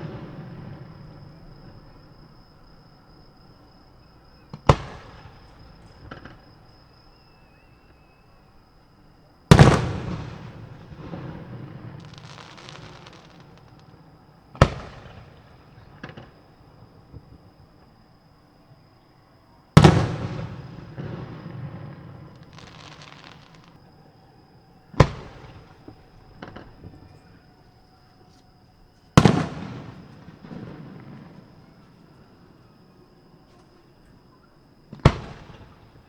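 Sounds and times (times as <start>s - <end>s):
firework shells booming: 4.4s - 8.1s, 9.5s - 17.6s, 19.8s - 27.8s, 29.1s - 36.0s
firework crackling: 9.5s - 16.4s, 19.8s - 23.8s, 29.2s - 32.4s.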